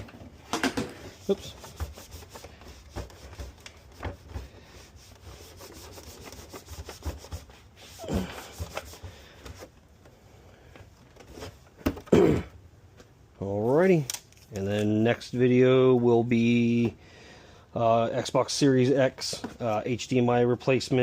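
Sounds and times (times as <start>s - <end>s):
rubbing and scraping handling: 0.0s - 11.8s.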